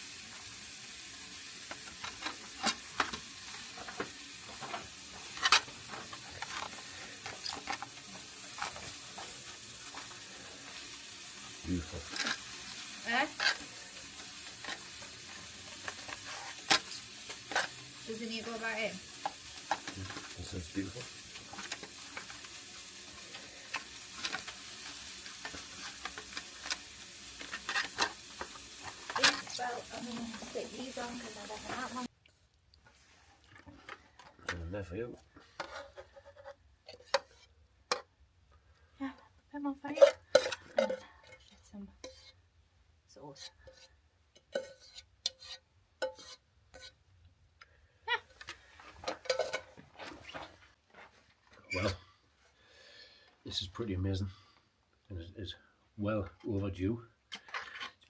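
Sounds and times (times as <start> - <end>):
food sizzling in a frying pan: 0.0 - 32.1, 43.4 - 47.0, 49.0 - 49.8
stirring clicks and scrapes: 1.6 - 10.9, 12.0 - 17.9, 21.0 - 34.6, 35.3 - 38.1, 39.9 - 42.4, 43.3 - 47.0.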